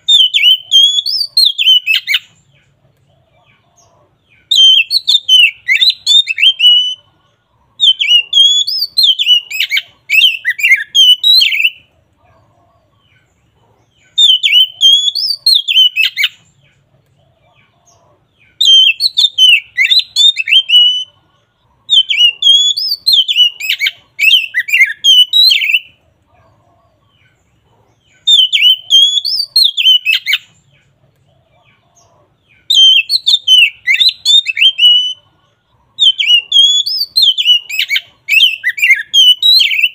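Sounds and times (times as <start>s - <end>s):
bird singing whistled notes: 0.0s - 2.4s, 4.3s - 7.1s, 7.8s - 11.9s, 14.0s - 16.8s, 18.4s - 21.2s, 21.9s - 26.0s, 28.1s - 30.7s, 32.5s - 35.2s, 36.0s - 39.9s.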